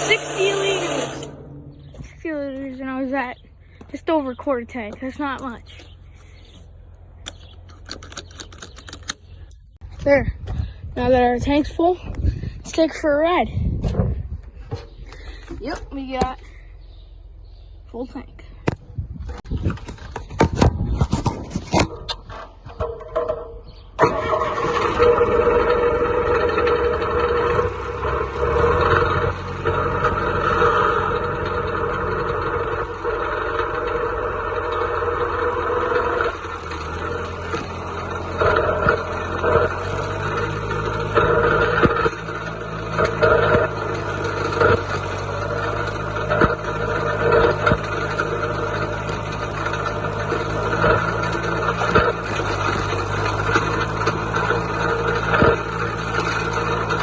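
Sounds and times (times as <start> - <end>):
tractor diesel engine running: 0.0 - 21.0, 21.8 - 57.0
clanks and rattles: 4.8 - 10.7, 18.7 - 57.0.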